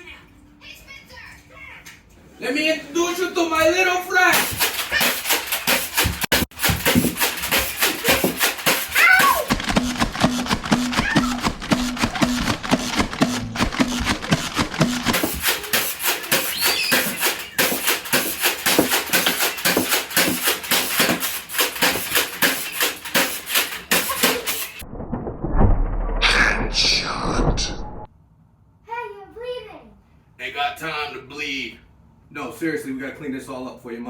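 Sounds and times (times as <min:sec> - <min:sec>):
toy blaster rapid firing: 0:04.3 - 0:24.8.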